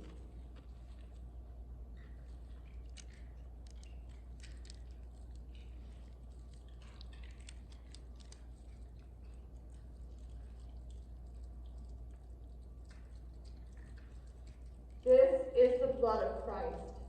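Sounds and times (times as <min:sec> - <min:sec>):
steady low hum: 0:00.0 - 0:17.0
faint small clicks: 0:02.0 - 0:09.4.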